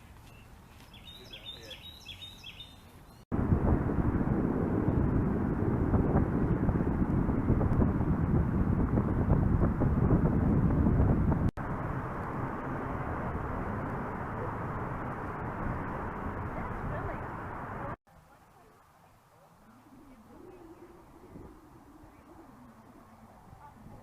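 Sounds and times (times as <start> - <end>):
loud outdoor rumbling: 3.3 - 18.0.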